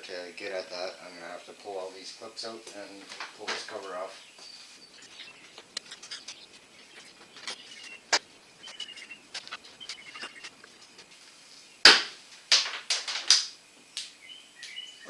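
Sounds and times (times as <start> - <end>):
faint bird chirps: 3.8 - 11.8, 14.1 - 15.0.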